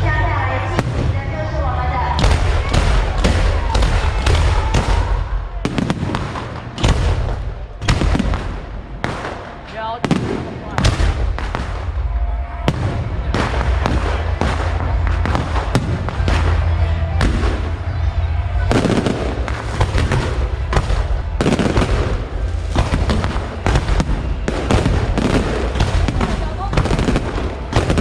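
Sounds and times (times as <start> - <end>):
fireworks bangs and crackles: 0.0 - 28.0
low rumble: 6.8 - 28.0.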